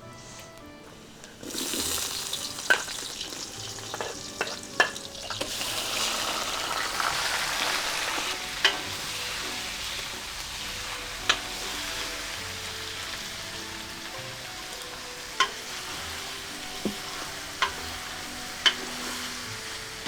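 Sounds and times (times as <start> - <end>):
food sizzling in a pan: 1.0 - 20.0
utensil knocking against pan: 3.9 - 5.5, 15.3 - 16.1, 16.7 - 19.1.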